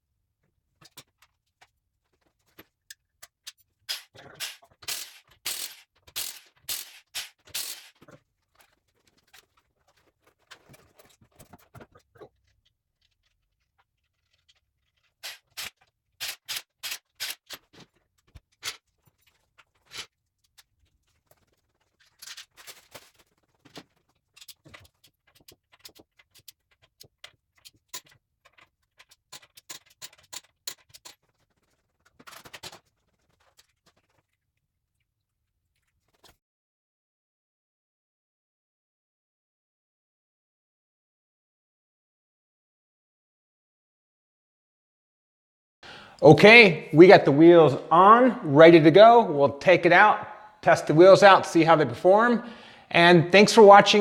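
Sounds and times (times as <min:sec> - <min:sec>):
ratchet wrench clicking: 0:03.9 - 0:08.0, 0:15.2 - 0:17.6.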